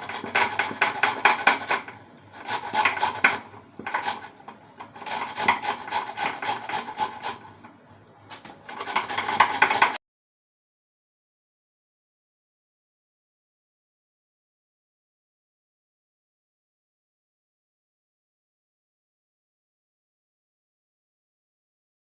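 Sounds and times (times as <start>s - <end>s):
vegetable grating on hand grater: 0.0s - 7.6s, 8.6s - 10.0s.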